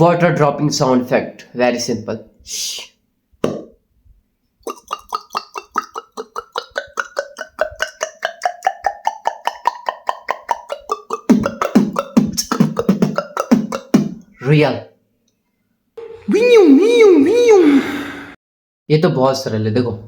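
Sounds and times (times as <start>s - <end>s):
mouth popping clicks: 4.6s - 14.4s.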